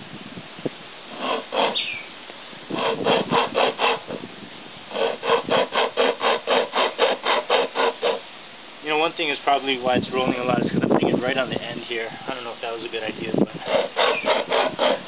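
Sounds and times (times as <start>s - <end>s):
pocket chainsaw rasping through log: 1.1s - 1.9s, 2.7s - 4.3s, 4.9s - 8.2s, 13.6s - 15.0s.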